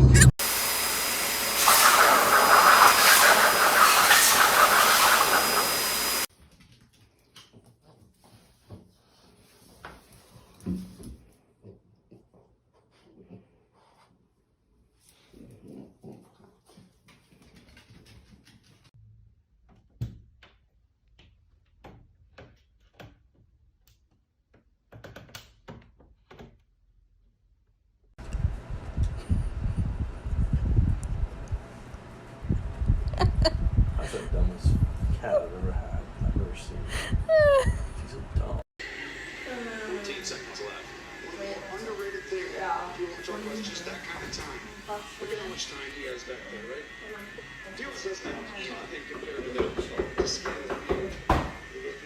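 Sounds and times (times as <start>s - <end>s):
loud steady hiss: 0.4s - 6.3s.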